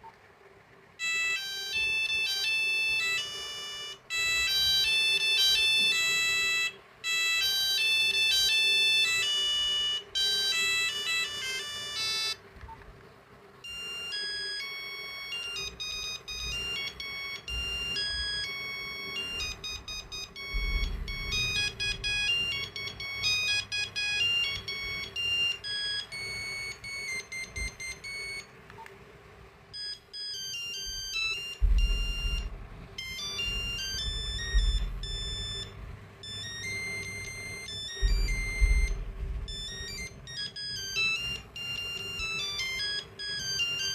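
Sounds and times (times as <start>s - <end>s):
beeping phone ringtone melody: 1.0s - 12.4s, 13.6s - 28.5s, 29.8s - 43.9s
low thumps: 19.3s - 22.8s, 31.0s - 40.3s.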